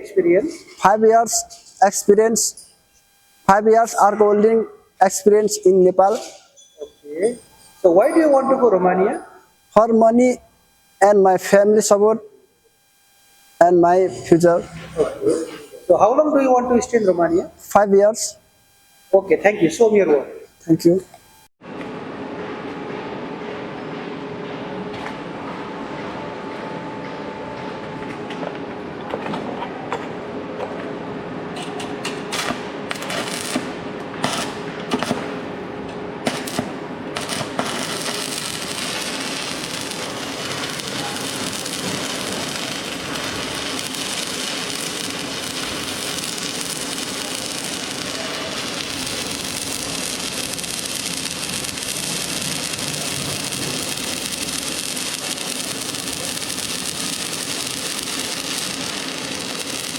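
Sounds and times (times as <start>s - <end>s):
welding arc crackling hiss: 0.0s - 21.6s, 31.6s - 59.9s
welding cracks and pops: 32.0s - 35.4s, 36.2s - 59.9s.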